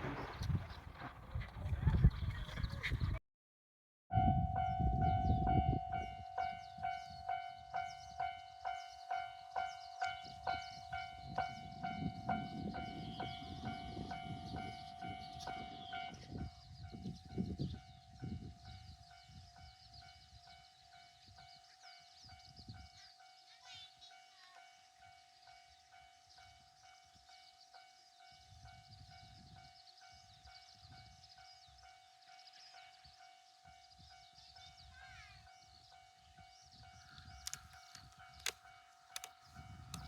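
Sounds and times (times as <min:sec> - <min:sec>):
level-crossing alarm bell ringing: 0:04.1 - 0:17.5
train rumbling past: 0:04.2 - 0:19.0.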